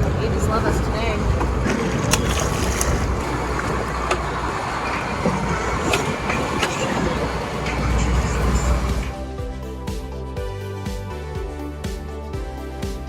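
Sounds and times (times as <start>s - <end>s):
water rushing: 0.0s - 9.4s
boat engine low rumble: 0.0s - 13.0s.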